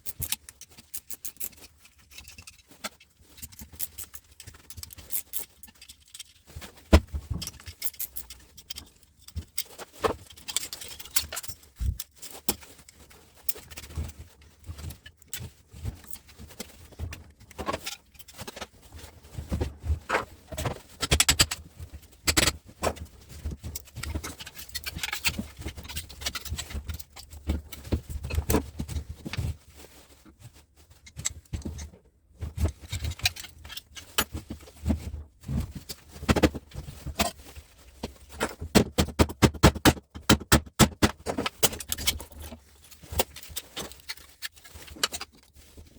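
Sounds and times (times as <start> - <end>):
metal parts and tools clinking: 0.0 - 12.7, 22.2 - 23.0, 23.6 - 28.6, 32.6 - 34.8, 38.3 - 45.4.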